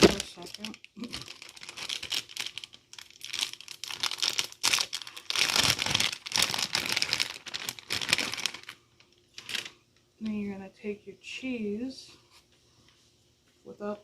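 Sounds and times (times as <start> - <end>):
plastic wrapping crinkling: 0.0 - 9.8.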